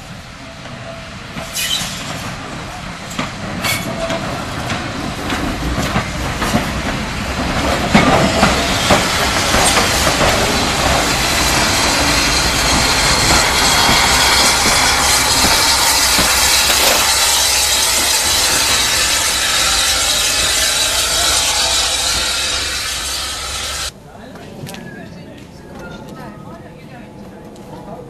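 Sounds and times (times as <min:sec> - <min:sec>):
train wheels clattering on rails: 0:00.6 - 0:23.9
sharp metal clanks: 0:11.4 - 0:23.9.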